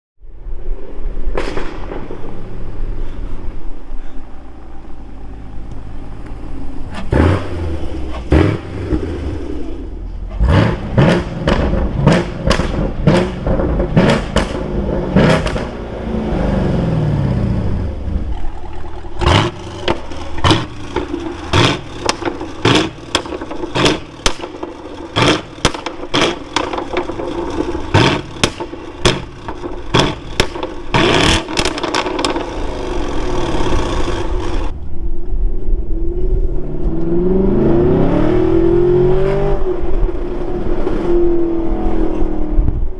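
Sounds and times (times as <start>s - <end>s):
exhaust crackles and pops: 1.2s - 3.5s, 5.6s - 16.6s, 17.4s - 35.6s
car engine revving: 4.3s - 42.9s.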